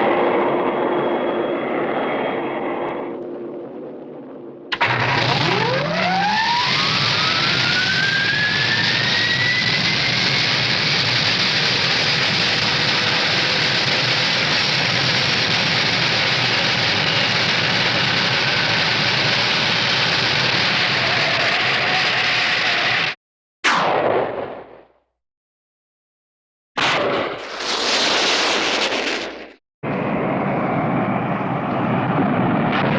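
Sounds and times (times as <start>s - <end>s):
cartoon rocket thruster roar: 4.7s - 24.9s, 26.8s - 32.9s
rising whistle: 4.8s - 10.6s.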